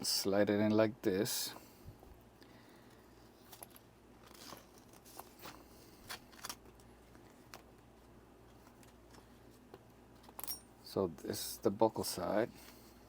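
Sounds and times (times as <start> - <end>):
watch parts clicking and scraping: 3.4 - 7.6.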